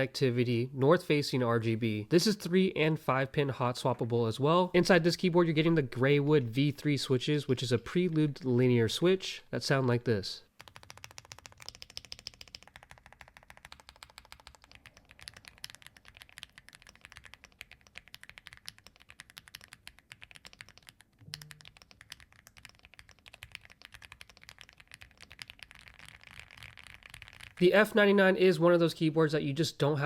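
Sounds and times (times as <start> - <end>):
mechanical keyboard typing: 10.6 - 27.6.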